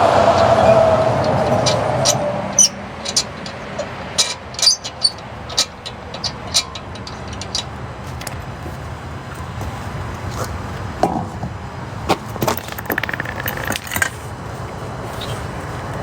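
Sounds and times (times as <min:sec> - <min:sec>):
vehicle passing: 0:00.0 - 0:04.2.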